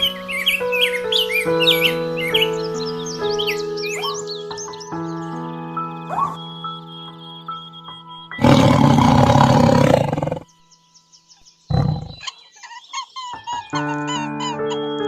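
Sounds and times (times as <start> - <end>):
large animal roaring: 8.4 - 10.5, 11.7 - 12.2.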